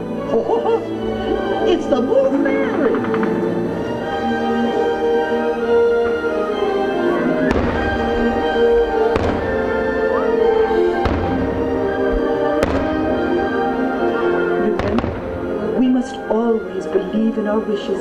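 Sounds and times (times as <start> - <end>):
music soundtrack: 0.0 - 18.0
fireworks booming: 7.4 - 9.9, 10.6 - 13.3, 14.8 - 15.6.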